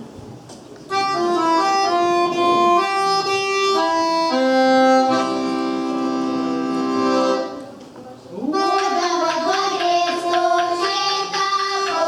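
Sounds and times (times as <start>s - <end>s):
accordion playing slow melody: 0.9s - 7.8s.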